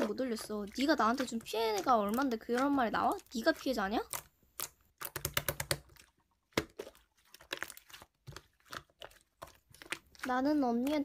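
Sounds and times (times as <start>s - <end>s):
typing on computer keyboard: 5.1s - 5.8s.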